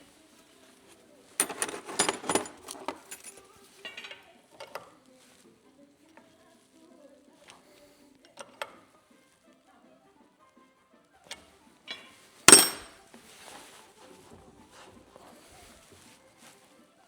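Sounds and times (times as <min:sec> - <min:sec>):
quiet background music: 0:00.0 - 0:17.0
metal parts clinking and rattling: 0:01.4 - 0:04.2, 0:11.9 - 0:13.0.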